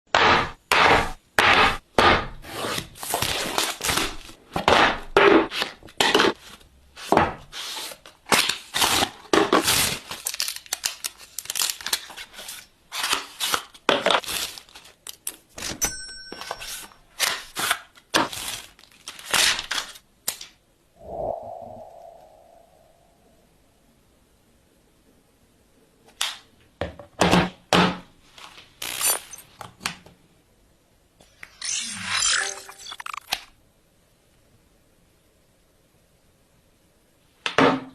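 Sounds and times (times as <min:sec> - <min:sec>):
plastic and cardboard tearing: 0:02.4 - 0:06.4, 0:07.0 - 0:15.4, 0:17.2 - 0:20.4.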